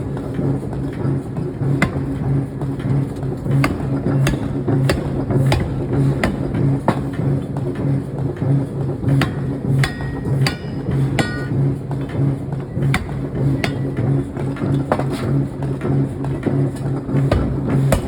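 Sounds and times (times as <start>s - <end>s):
air hammer pounding: 0.1s - 18.0s
sharp metallic clanks: 9.2s - 11.6s.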